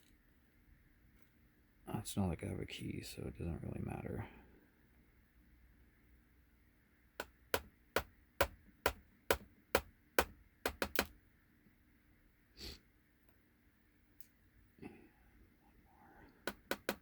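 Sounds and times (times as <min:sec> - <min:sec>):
sharp taps on lock cylinder: 0:07.2 - 0:11.1, 0:16.5 - 0:17.0.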